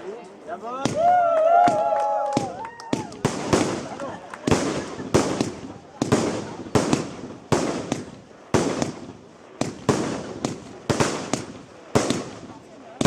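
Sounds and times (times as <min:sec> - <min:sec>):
fireworks bursting: 0:00.2 - 0:13.0.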